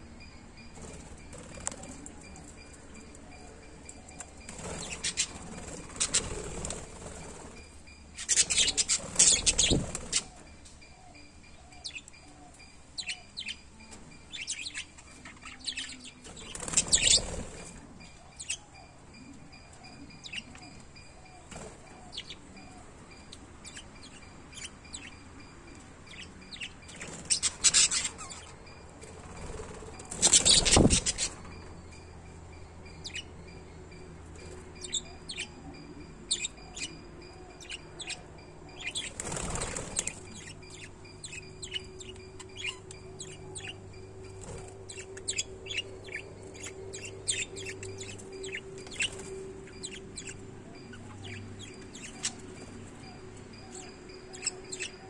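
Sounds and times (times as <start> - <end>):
lovebirds chirping: 0.0 - 55.0
wings fluttering: 4.4 - 7.7, 16.2 - 17.9, 29.0 - 31.5, 38.9 - 40.6.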